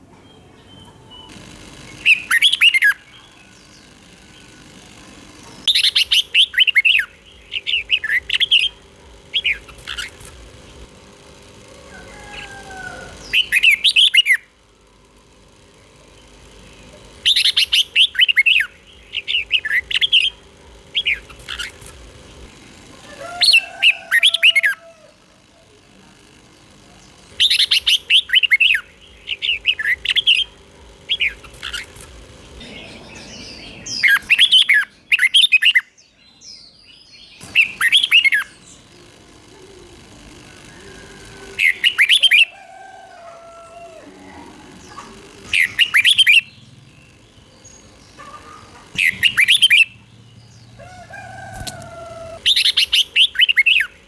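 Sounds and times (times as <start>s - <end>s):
bird singing warbling notes: 44.7s - 51.3s.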